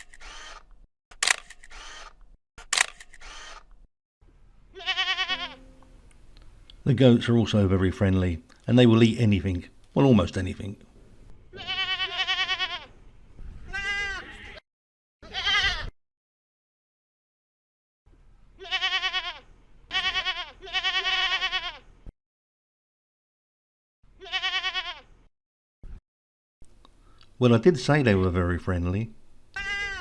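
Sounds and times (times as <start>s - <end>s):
goats bleating: 4.8s - 5.6s, 11.6s - 12.9s, 13.7s - 14.6s, 15.2s - 15.9s, 18.6s - 21.8s, 24.2s - 25.0s, 29.6s - 30.0s.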